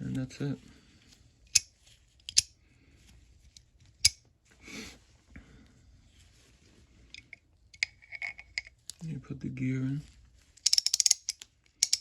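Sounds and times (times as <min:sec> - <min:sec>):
soft scraping rustle: 0:04.5 - 0:07.2
metal ratchet part clicking: 0:10.6 - 0:12.0.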